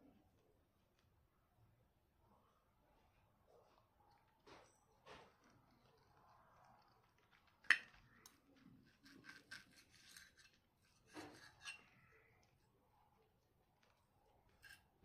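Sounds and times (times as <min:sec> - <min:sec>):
cutlery scraping plate: 0:08.8 - 0:12.1, 0:14.5 - 0:15.0
cutlery clinking on plate: 0:08.9 - 0:12.0.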